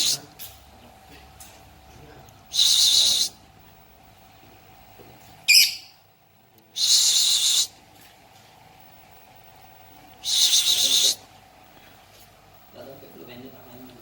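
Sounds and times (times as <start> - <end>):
bird shrill harsh calls: 2.5 - 3.4, 5.5 - 6.0, 6.8 - 7.7, 10.2 - 11.2.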